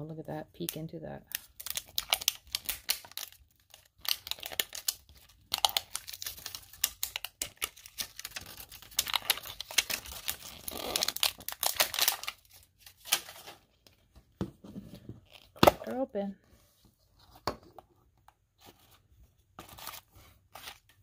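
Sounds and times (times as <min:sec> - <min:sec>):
plastic wrapping crinkling and tearing: 0:01.2 - 0:13.7.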